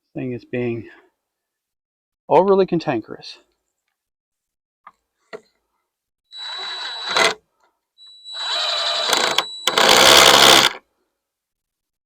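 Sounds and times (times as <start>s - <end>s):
cordless drill driving screws: 6.4s - 7.4s, 8.1s - 10.8s.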